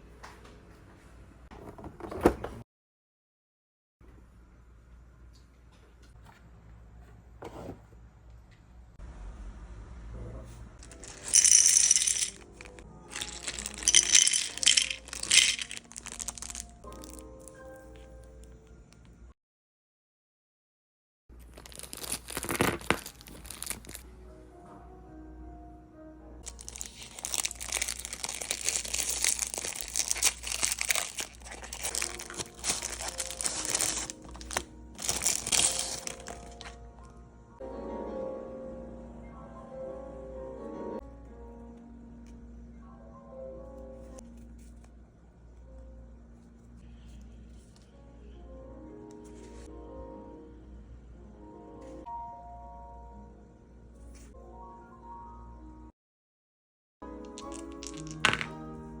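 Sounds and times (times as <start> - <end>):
game pieces rattling: 10.8 - 17.2, 21.5 - 24.0, 26.4 - 36.8, 57.2 - 58.6
plastic packaging crinkling: 10.8 - 17.5, 21.4 - 24.0, 26.4 - 36.8, 57.2 - 58.5.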